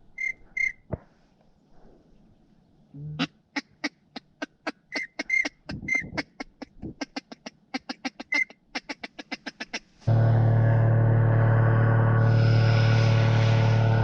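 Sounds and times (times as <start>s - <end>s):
ducks quacking rapidly: 3.2s - 9.9s.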